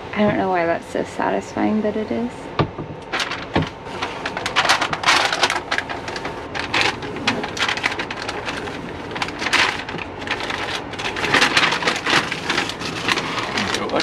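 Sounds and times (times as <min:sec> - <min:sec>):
paper masking peeling off plastic: 0:03.0 - 0:14.0.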